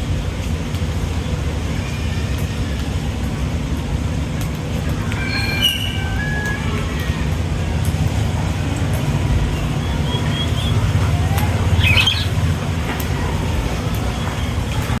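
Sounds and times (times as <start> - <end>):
steady low rumble: 0.0 - 15.0
birds chirping: 4.9 - 15.0
bird squawking call: 5.0 - 6.9, 9.6 - 12.6.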